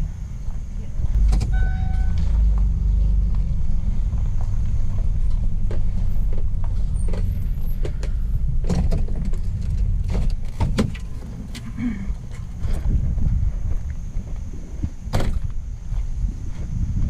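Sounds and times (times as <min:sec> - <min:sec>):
van road and engine rumble: 0:00.0 - 0:17.0
knocks and rattles: 0:01.2 - 0:11.7.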